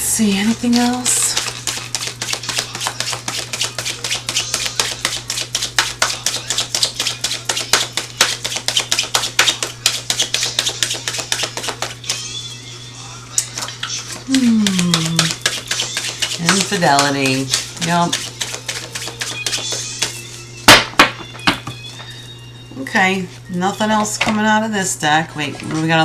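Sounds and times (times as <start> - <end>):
cards being shuffled: 0.5 - 12.2, 13.9 - 20.3.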